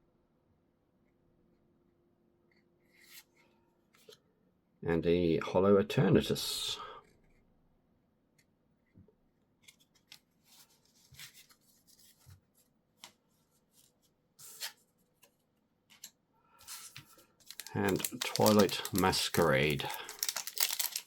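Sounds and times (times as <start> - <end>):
cards clicking and rustling: 14.4 - 21.0.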